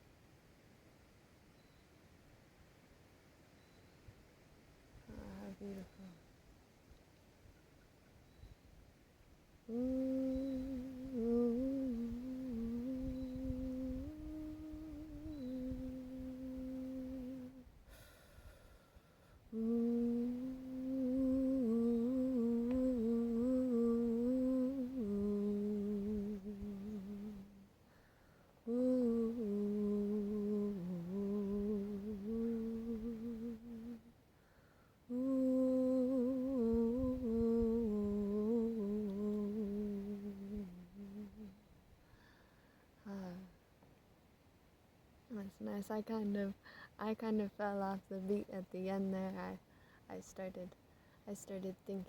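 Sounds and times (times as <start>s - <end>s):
woman humming: 5.0s - 6.3s, 9.6s - 18.2s, 19.5s - 27.7s, 28.6s - 34.2s, 35.1s - 41.7s, 43.0s - 43.6s.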